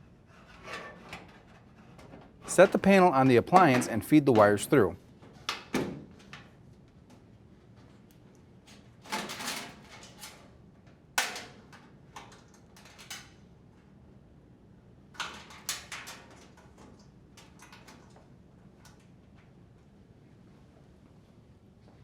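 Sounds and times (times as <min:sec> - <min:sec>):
sheet metal knocking and scraping: 0:02.5 - 0:04.6.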